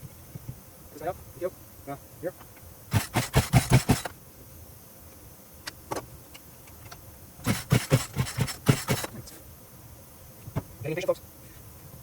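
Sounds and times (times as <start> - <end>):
chainsaw pull-start compression puffs: 2.9 - 4.1, 7.4 - 9.2.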